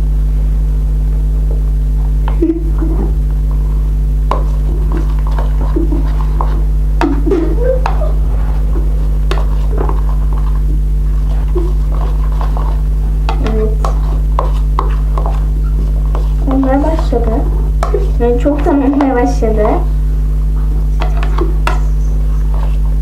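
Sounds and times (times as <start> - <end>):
low hum: 0.0 - 23.0
spoon scraping a bowl: 3.6 - 7.2, 7.8 - 19.7, 21.0 - 23.0.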